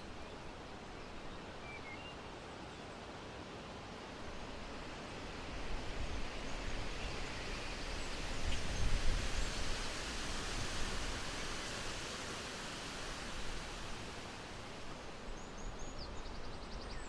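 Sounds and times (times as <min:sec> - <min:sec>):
wind gusts on microphone: 0:04.8 - 0:17.0.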